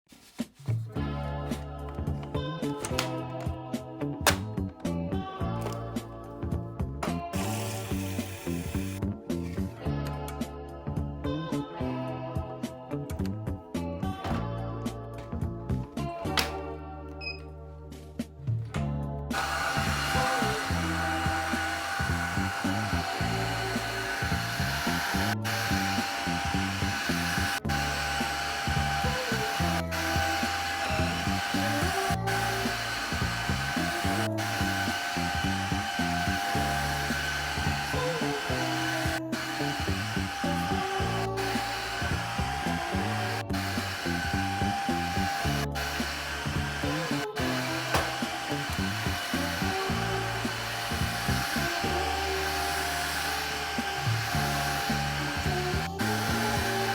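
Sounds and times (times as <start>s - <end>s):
music with bass line: 0.2s - 52.4s
vacuum cleaner motor whining: 7.4s - 9.0s, 19.3s - 56.9s.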